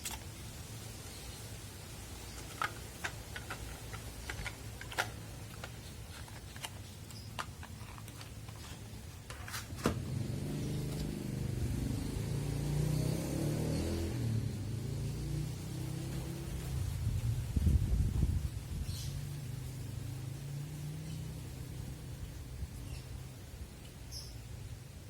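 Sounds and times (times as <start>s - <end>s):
packaging clicks and taps: 2.3s - 9.9s.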